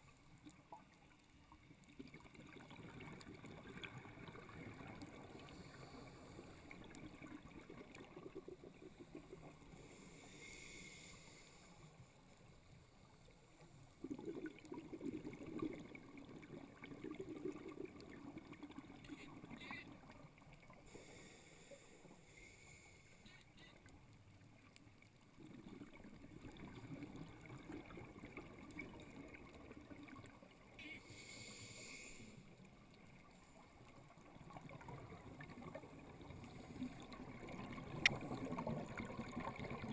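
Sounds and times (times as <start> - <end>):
regulator inhalation hiss: 9.8 - 11.8, 31.0 - 32.4
underwater exhaust bubbling: 13.8 - 21.3, 24.6 - 39.9.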